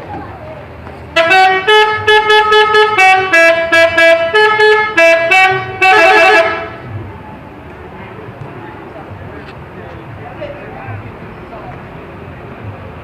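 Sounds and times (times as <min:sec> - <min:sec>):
musical air horn playing a tune: 0:01.2 - 0:06.8.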